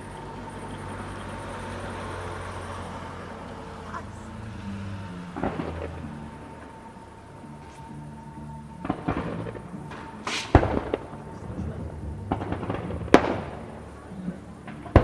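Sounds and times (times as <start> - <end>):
crowd hum: 0.0 - 15.0
sharp bang: 10.2 - 14.0.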